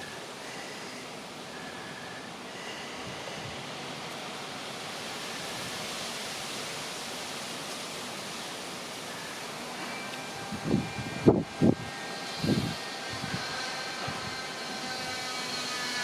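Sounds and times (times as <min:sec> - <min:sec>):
wind rushing through foliage: 0:00.0 - 0:16.0.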